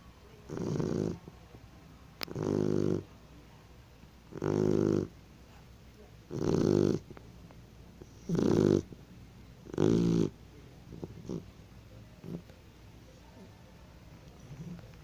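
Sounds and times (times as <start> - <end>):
puppy snoring: 0.4 - 1.3, 2.2 - 3.1, 4.3 - 5.6, 6.3 - 7.2, 8.0 - 9.0, 9.6 - 11.6, 12.2 - 12.6, 14.3 - 15.0.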